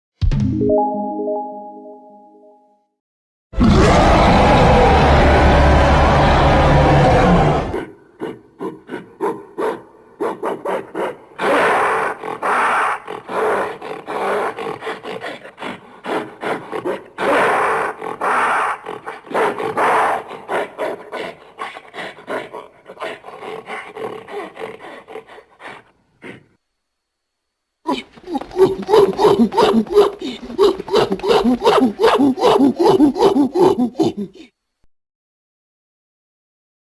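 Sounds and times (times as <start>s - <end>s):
gorilla roaring: 3.6s - 26.6s, 27.9s - 34.5s
gorilla grunts and huffs: 7.7s - 26.6s, 27.9s - 34.6s.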